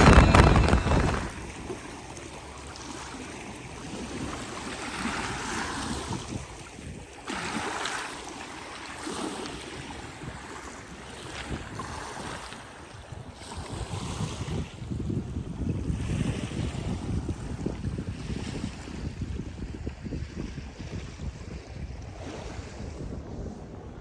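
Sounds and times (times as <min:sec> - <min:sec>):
wind on microphone: 0:00.0 - 0:01.9, 0:05.0 - 0:07.2, 0:11.2 - 0:24.0
small sea waves washing ashore: 0:00.0 - 0:17.6.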